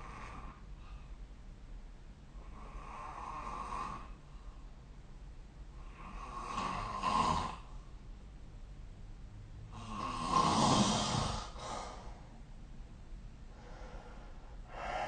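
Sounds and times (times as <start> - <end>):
person snoring: 5.9 - 7.7, 9.7 - 12.1.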